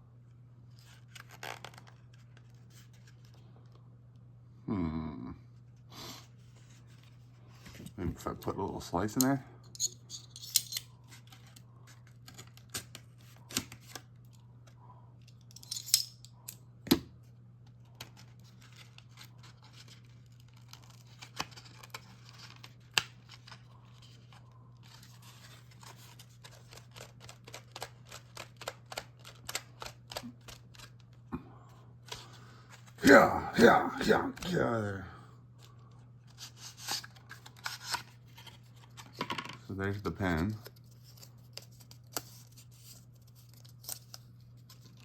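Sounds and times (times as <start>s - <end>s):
scissors snipping packaging: 24.2s - 31.1s
steady low hum: 30.1s - 41.4s.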